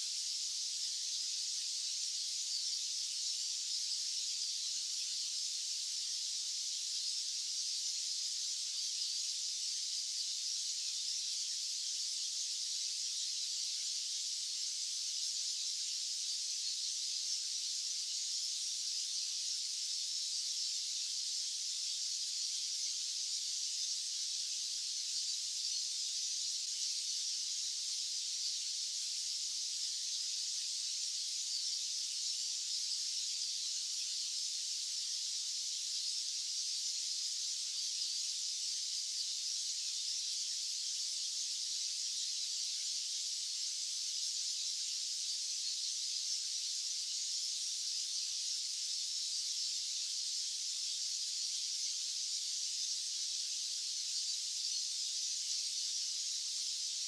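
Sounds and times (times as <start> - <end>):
high-pitched white noise hiss: 0.0 - 57.0.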